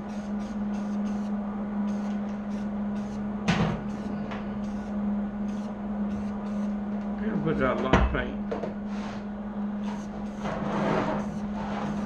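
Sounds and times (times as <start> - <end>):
spray paint can hissing: 0.0 - 3.2, 3.8 - 6.7
steady low hum: 0.0 - 12.0.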